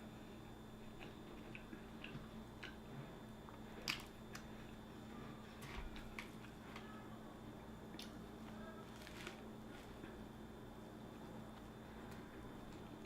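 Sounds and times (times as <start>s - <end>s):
person chewing with mouth clicks: 0.8s - 4.7s.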